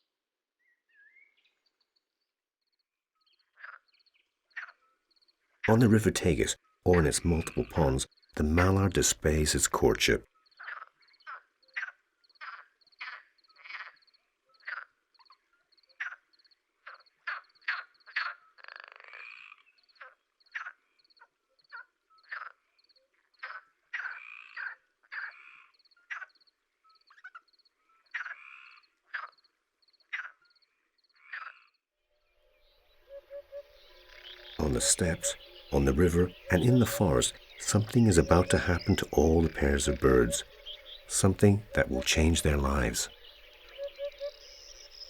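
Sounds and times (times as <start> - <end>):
frogs croaking: 5.6 - 31.8, 32.5 - 45.0
rasping calls: 5.7 - 10.2, 33.1 - 45.0
high steady chirping: 34.3 - 45.0.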